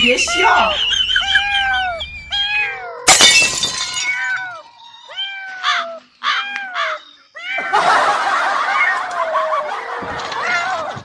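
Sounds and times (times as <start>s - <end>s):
cat meowing: 0.1s - 3.1s, 4.0s - 7.8s, 10.3s - 11.0s
loud breaking crash: 3.1s - 4.2s.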